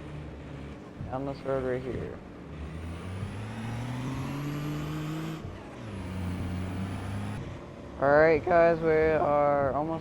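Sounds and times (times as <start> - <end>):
truck engine accelerating: 0.0 - 9.7.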